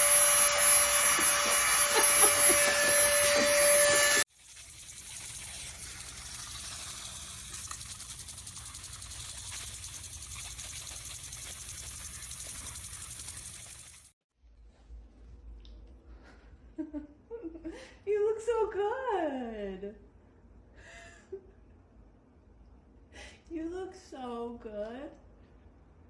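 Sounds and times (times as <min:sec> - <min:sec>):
loud machine whine: 0:00.0 - 0:04.3.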